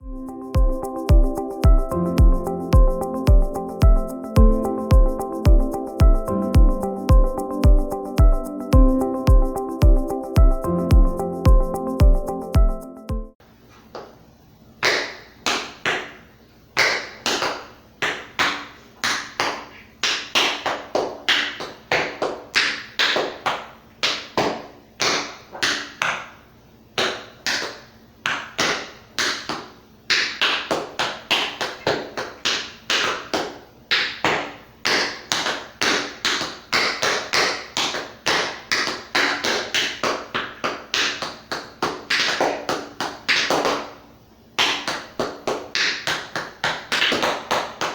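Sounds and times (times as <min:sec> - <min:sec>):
tap shoes striking a hard floor: 0:27.0 - 0:43.9, 0:44.6 - 0:47.9.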